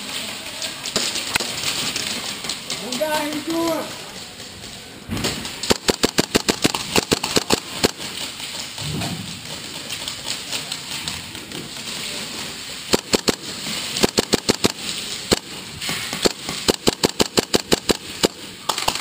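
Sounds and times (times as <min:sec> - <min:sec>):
airsoft guns firing: 0:00.8 - 0:03.9, 0:05.1 - 0:08.8, 0:09.4 - 0:19.0.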